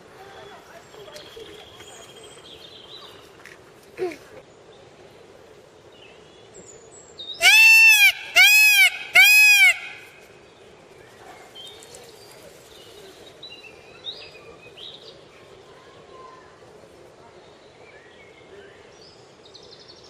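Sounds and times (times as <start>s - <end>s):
peacock calling: 7.4s - 10.2s.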